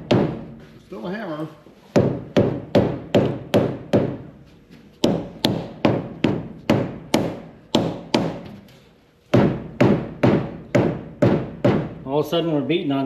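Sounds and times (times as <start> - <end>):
rubber hammer striking metal: 0.0 - 0.6, 2.0 - 4.3, 5.0 - 8.6, 9.3 - 12.0.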